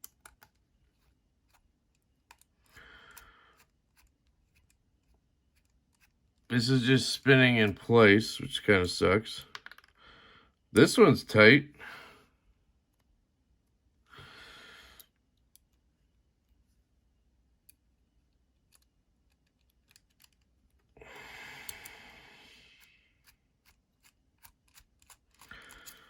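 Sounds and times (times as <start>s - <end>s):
small tool and screw clicks: 0.0s - 6.5s, 9.5s - 10.0s, 18.7s - 20.8s, 23.2s - 26.0s
breathy exhales: 21.0s - 23.1s.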